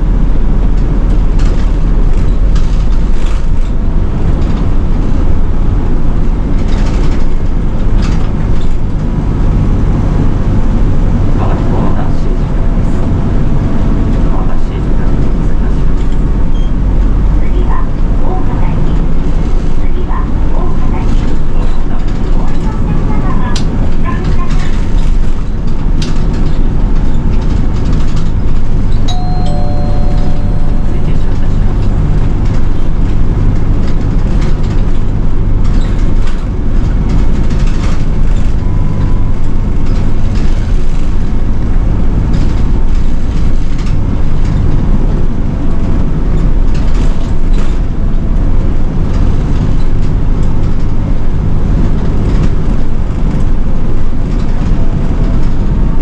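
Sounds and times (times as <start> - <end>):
bus engine running: 0.0 - 56.0
cabin rattling and clicking: 21.0 - 44.8
short electronic tones: 29.1 - 31.0.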